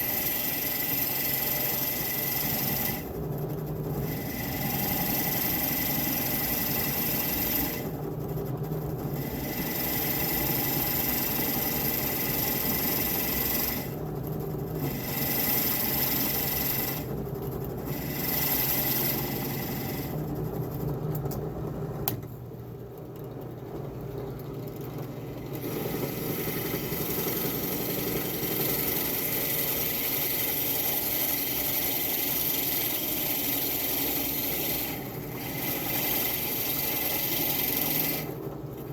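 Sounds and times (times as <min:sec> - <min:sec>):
tool rasping wood: 0:14.9 - 0:17.1, 0:17.9 - 0:20.1, 0:25.6 - 0:38.3.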